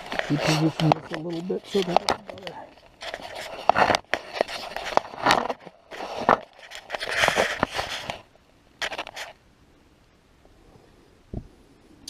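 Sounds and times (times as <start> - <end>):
rustling and scraping: 0.0 - 9.4.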